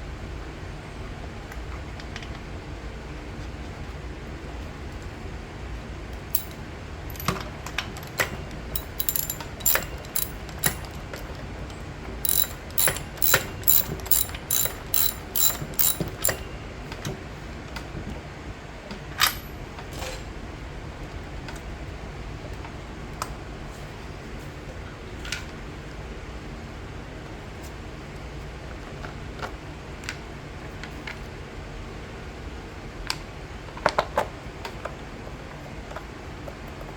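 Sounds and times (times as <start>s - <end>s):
ratchet wrench clicking: 6.4s - 7.3s, 8.2s - 10.9s, 12.3s - 16.4s.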